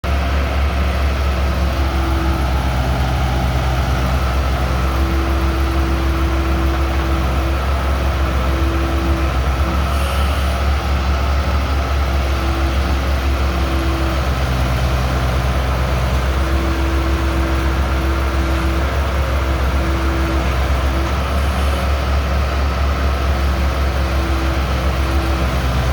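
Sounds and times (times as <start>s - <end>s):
diesel engine droning: 0.0s - 25.9s
faint higher tone: 1.6s - 10.4s.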